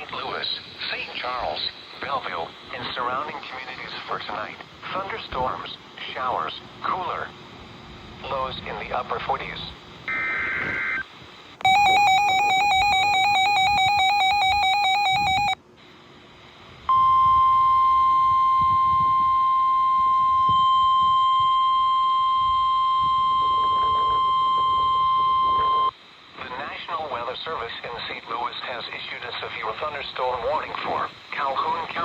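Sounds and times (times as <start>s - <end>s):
steady single-pitch alarm tone: 11.6s - 15.6s, 16.9s - 25.9s
two-pitch data burst: 11.6s - 15.6s, 16.9s - 25.9s
warbling alert tone: 11.6s - 15.6s.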